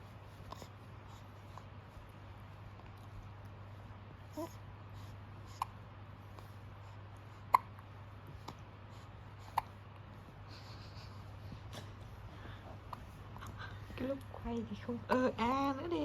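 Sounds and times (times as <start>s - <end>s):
baby hiccuping: 7.5s - 7.8s.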